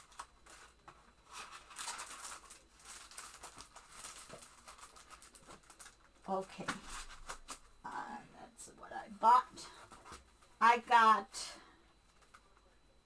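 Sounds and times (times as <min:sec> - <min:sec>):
plastic wrap and paper crinkling: 0:00.0 - 0:07.8.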